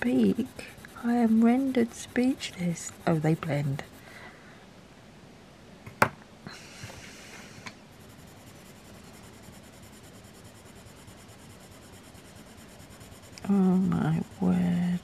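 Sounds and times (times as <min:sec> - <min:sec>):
pencil rubbing on paper: 0:00.0 - 0:04.0, 0:08.0 - 0:15.0.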